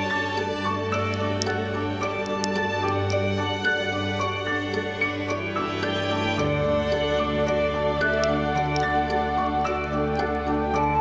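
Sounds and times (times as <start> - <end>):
gentle background music: 0.0 - 11.0.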